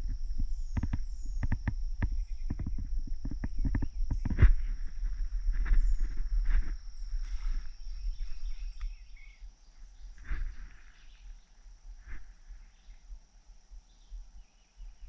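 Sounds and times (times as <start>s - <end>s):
high-pitched insect drone: 0.0s - 15.0s
rustles in leaf litter: 9.7s - 11.4s.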